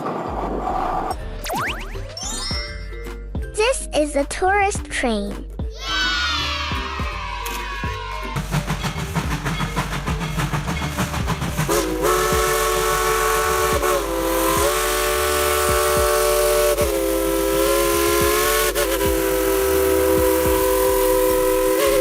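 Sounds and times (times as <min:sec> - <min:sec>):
chime whistle: 0:01.9 - 0:03.0
steam locomotive chuffing: 0:08.4 - 0:22.0.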